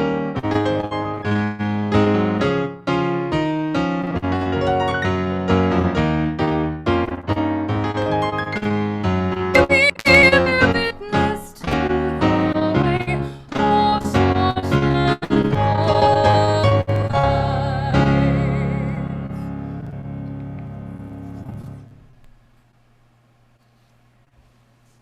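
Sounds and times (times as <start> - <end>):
piano music: 0.0 - 22.1
person singing with vibrato: 9.6 - 19.6.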